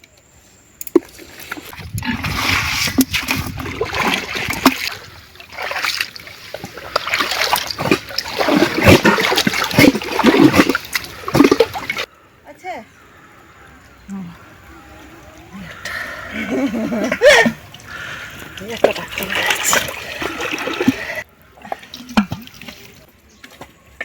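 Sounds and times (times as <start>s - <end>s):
river water splashing: 1.1s - 12.1s, 17.2s - 23.1s.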